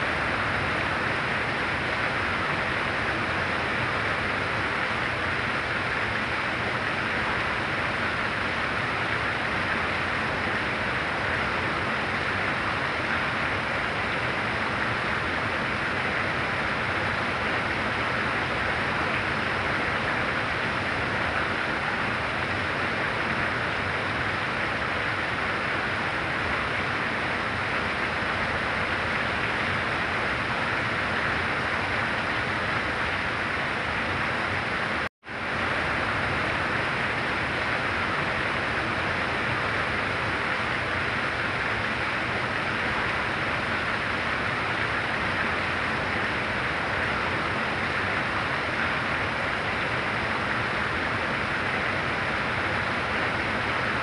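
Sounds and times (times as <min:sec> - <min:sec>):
heavy rain falling: 0:00.0 - 0:54.0.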